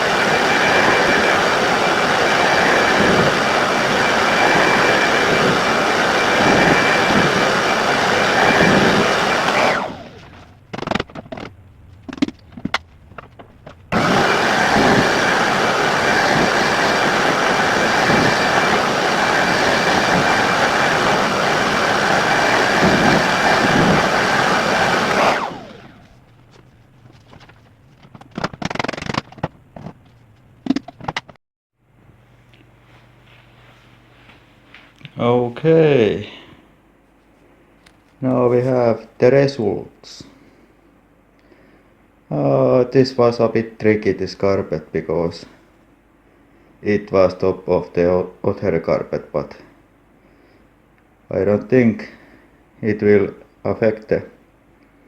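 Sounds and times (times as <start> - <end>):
vacuum cleaner running: 0.0 - 10.6, 11.4 - 27.2
knocks and clatters: 10.4 - 13.9, 26.1 - 31.4.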